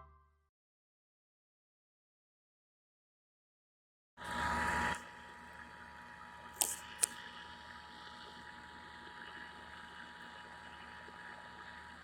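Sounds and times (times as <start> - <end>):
sharp clicks: 6.6 - 7.2.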